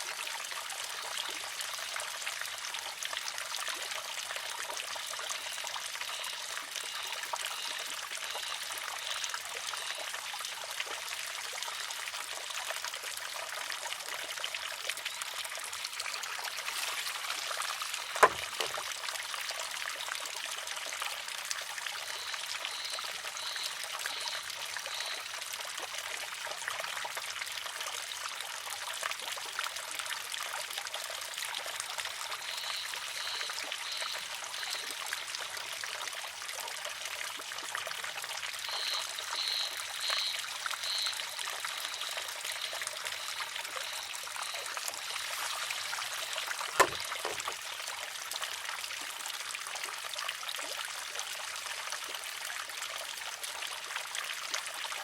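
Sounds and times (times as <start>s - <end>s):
water trickling: 0.0s - 55.0s
bamboo arm clacking on stone: 18.0s - 18.8s, 46.5s - 47.6s.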